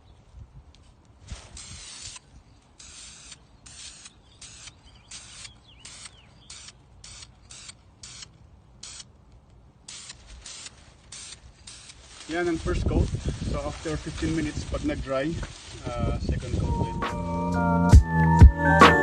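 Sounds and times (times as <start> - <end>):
spray paint hissing bursts: 1.3 - 9.1, 9.8 - 14.9.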